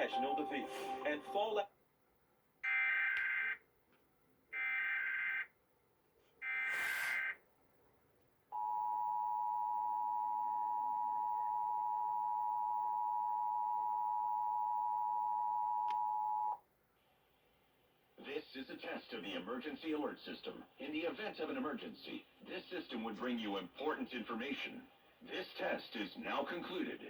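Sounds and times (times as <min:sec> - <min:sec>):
two-tone alert signal: 0:00.0 - 0:01.5.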